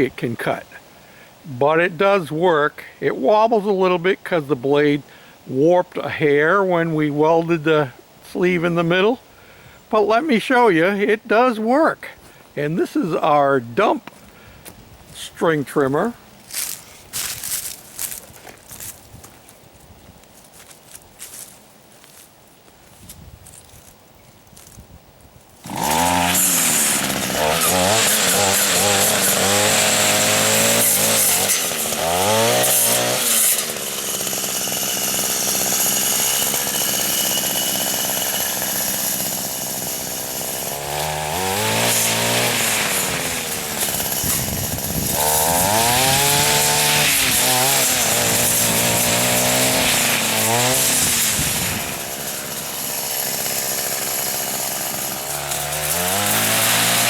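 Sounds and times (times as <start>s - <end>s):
two-stroke engine revving: 25.6s - 57.0s.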